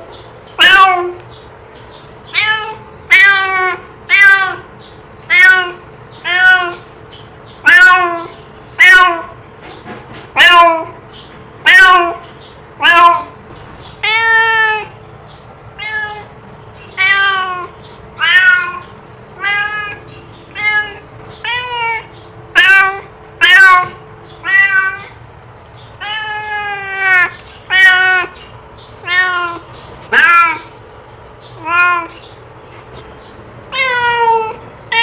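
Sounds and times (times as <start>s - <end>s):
cat meowing: 0.6s - 1.2s, 2.2s - 6.9s, 7.6s - 9.4s, 10.3s - 11.0s, 11.6s - 12.2s, 12.8s - 15.0s, 15.7s - 25.2s, 25.9s - 30.8s, 31.5s - 32.3s, 33.7s - 35.0s.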